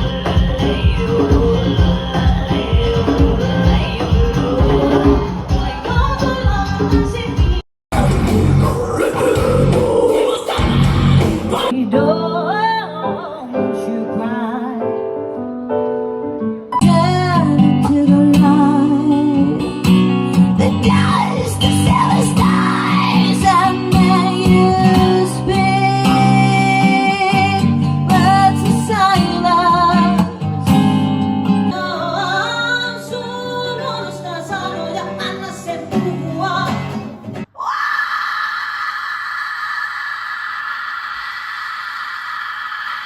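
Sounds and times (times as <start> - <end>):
woman singing with vibrato: 0.0 - 7.6, 11.5 - 15.0, 16.8 - 19.8, 20.6 - 30.4, 31.7 - 36.9
acoustic guitar: 0.0 - 14.8, 16.7 - 37.5.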